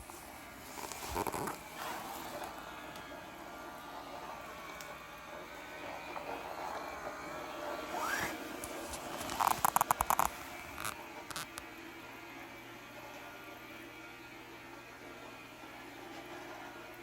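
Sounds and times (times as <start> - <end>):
robot vacuum motor hum: 0.0 - 11.7.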